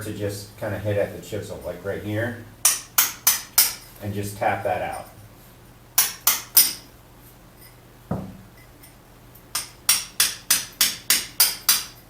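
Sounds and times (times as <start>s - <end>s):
hammer striking chisel: 2.6s - 3.9s, 6.0s - 6.9s, 9.5s - 12.0s
dull knock: 8.1s - 8.4s.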